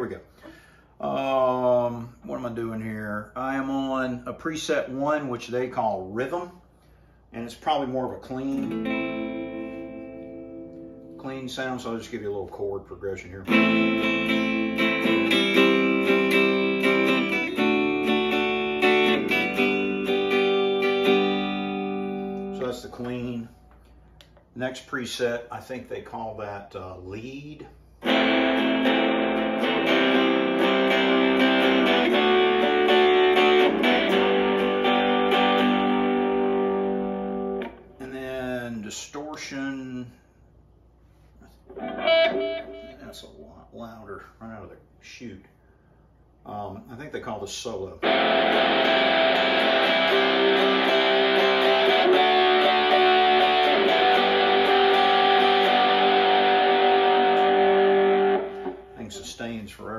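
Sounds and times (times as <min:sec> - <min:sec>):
electric guitar notes and chords: 0:08.5 - 0:11.2, 0:13.4 - 0:24.0, 0:28.0 - 0:38.0, 0:41.7 - 0:43.2, 0:48.0 - 0:59.0.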